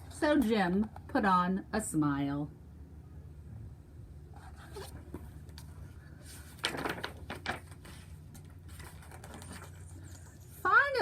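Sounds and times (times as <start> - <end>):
low room hum: 0.0 - 11.0
book pages turning: 4.4 - 10.6.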